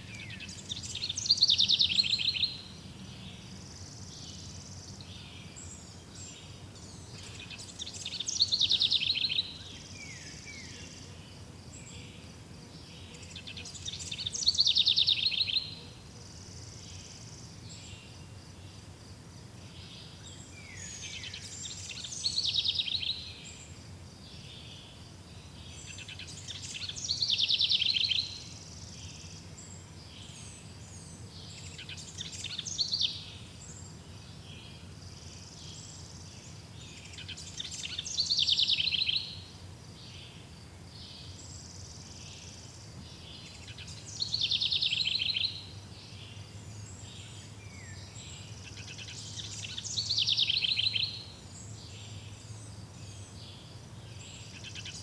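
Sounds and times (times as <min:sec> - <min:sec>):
songbird trilling: 0:37.0 - 0:39.4, 0:43.4 - 0:45.7, 0:47.2 - 0:51.3.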